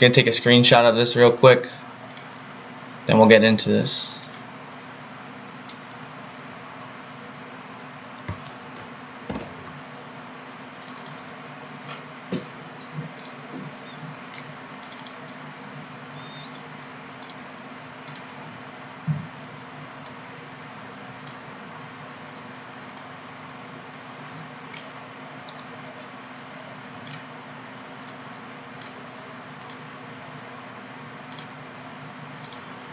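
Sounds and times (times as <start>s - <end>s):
low electrical hum: 0.0s - 32.9s
keyboard and mouse clicks: 10.8s - 11.2s, 14.3s - 15.2s.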